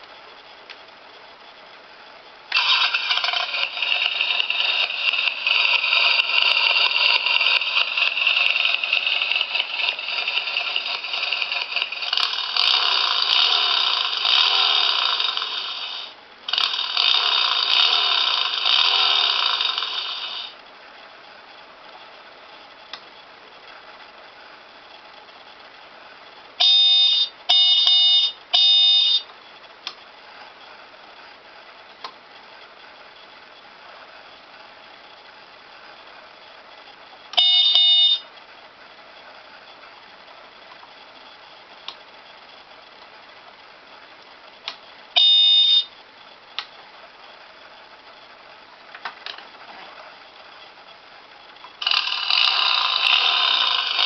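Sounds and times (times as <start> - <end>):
short tonal beeps: 26.6 - 29.3, 37.4 - 38.3, 45.2 - 45.9.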